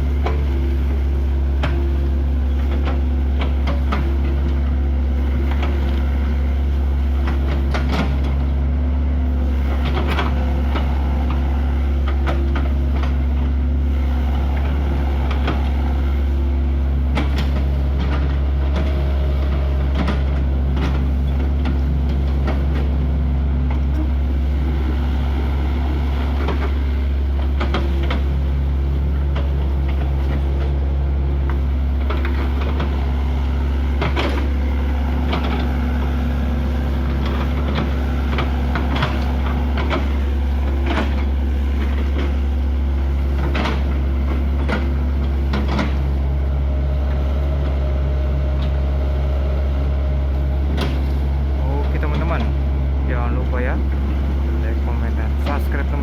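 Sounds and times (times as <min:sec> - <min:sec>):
excavator diesel engine droning: 0:00.0 - 0:56.0
machine clanks and knocks: 0:31.5 - 0:46.0.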